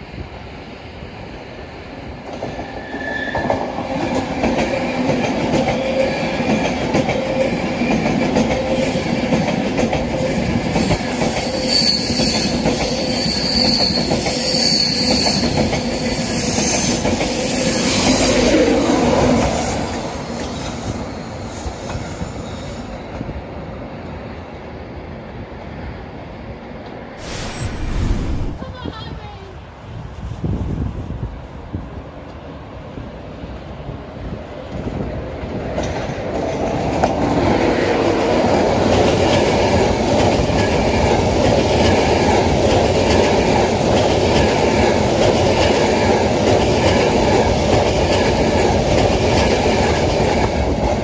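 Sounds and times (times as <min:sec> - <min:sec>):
high-pitched wheel squeals: 0:11.0 - 0:15.6
train passing: 0:26.0 - 0:30.4.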